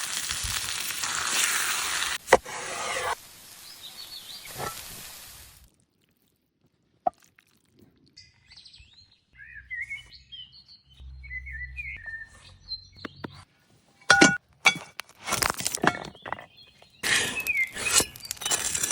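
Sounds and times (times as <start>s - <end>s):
loud crackling crunching strokes: 0.0s - 5.7s, 16.9s - 18.9s
birds chirping: 3.6s - 4.7s, 8.2s - 14.4s, 15.9s - 18.9s.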